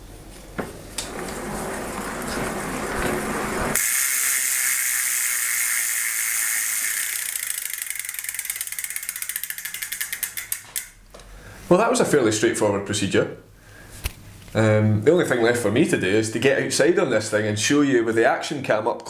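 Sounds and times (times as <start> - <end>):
bicycle drive whirring: 0.6 - 10.6
bicycle freehub clicking: 1.0 - 11.0.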